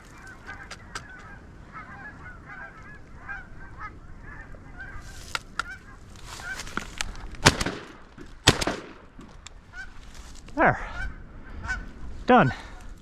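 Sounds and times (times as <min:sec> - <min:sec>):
geese honking and clucking: 0:00.0 - 0:06.9, 0:09.6 - 0:12.0
wind rumble on microphone: 0:00.0 - 0:13.0
shotgun shots: 0:07.4 - 0:09.1.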